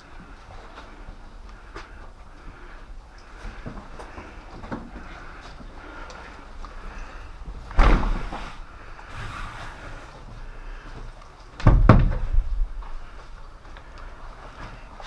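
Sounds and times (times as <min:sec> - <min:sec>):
low background noise: 0:00.0 - 0:15.0
heavy thumps: 0:07.6 - 0:08.7, 0:11.6 - 0:13.0.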